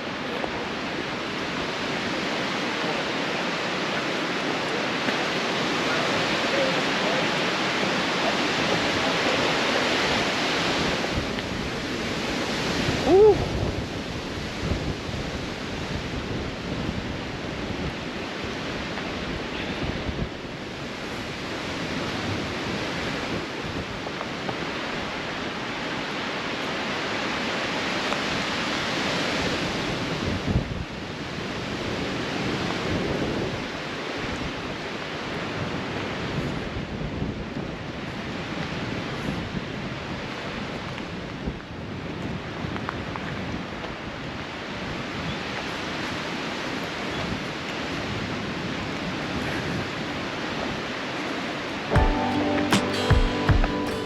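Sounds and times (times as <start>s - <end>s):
wind buffeting microphone: 0.0s - 25.5s.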